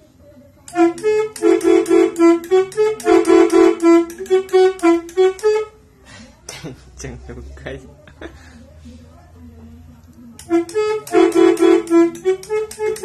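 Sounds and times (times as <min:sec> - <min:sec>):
air horn tooting a tune: 0:00.7 - 0:05.8, 0:10.4 - 0:13.0.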